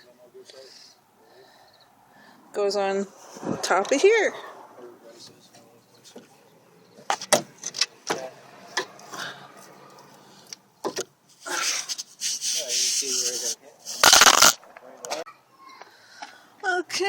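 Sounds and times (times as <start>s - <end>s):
metal parts scraping and rubbing: 11.6s - 14.6s.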